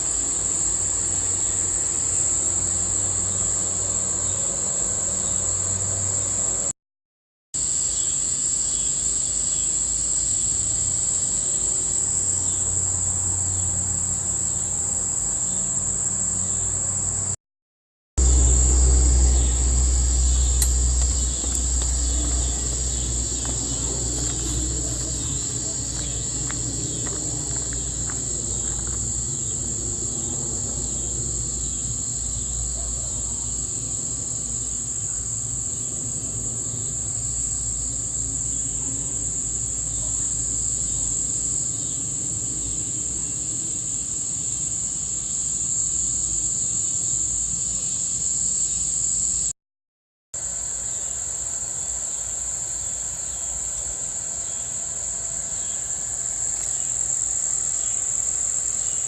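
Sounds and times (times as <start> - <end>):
night insect trill: 0.0 - 6.7, 7.6 - 17.4, 18.2 - 49.5, 50.4 - 59.0
low rumble: 18.2 - 32.9.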